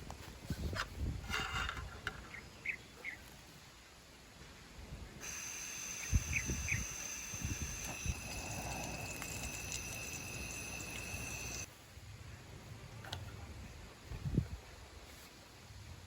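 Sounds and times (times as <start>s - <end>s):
high insect trilling: 5.2s - 11.7s.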